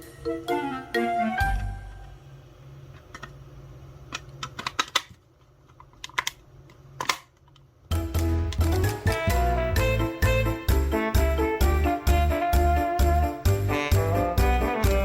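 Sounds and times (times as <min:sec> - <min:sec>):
music: 0:00.0 - 0:02.2, 0:07.9 - 0:15.0.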